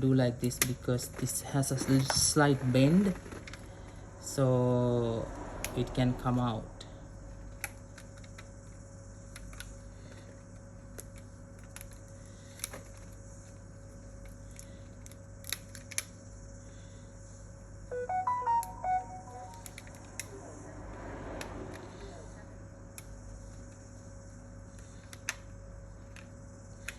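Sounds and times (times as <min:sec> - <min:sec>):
phone electronic jingle: 0:17.9 - 0:20.0.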